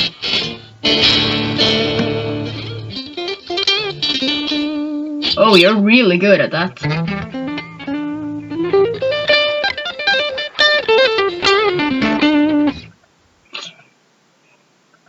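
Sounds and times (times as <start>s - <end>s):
guitar melody: 0.0s - 13.0s.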